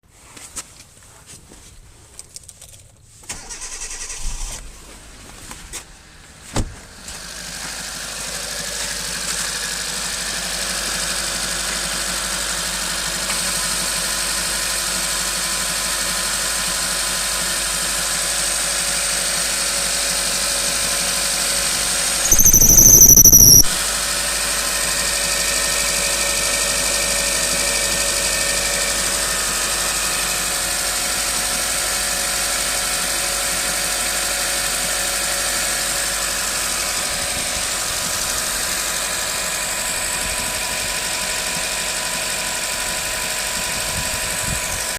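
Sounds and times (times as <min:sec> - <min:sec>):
car engine starting and idling: 0:02.2 - 0:24.9, 0:25.6 - 0:44.9
clicks: 0:22.3 - 0:23.8
loud high belt squeal: 0:22.3 - 0:23.8.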